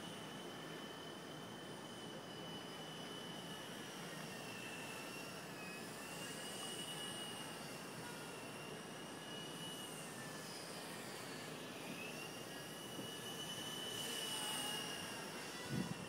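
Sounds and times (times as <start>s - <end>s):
rc helicopter motor whining: 0.0s - 16.0s
wind on microphone: 15.6s - 16.0s.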